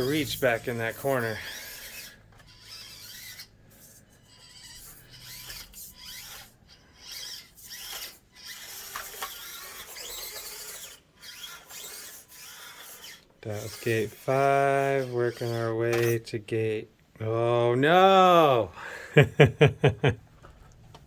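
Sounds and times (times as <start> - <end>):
electric motor and gears whining: 0.0 - 16.2.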